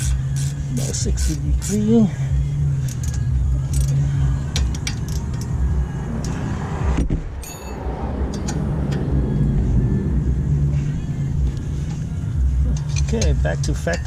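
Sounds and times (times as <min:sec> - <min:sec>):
hand tools clinking on metal: 0:07.4 - 0:07.8, 0:12.7 - 0:14.0.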